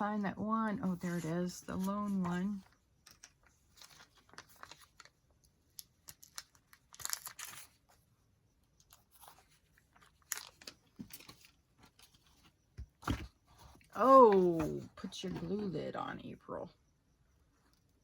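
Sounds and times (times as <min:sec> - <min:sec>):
paper rustling and crinkling: 0:00.9 - 0:08.0, 0:08.9 - 0:14.9.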